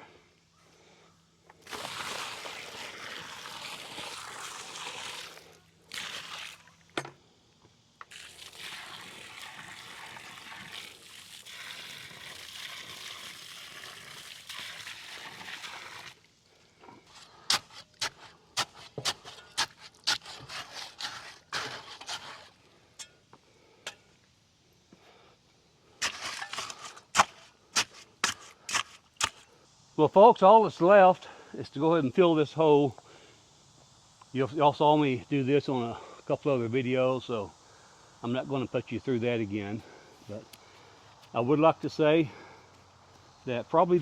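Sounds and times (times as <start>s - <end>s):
water pouring into cement mix: 1.6s - 6.9s, 8.1s - 16.3s, 17.5s - 22.6s, 26.0s - 29.4s.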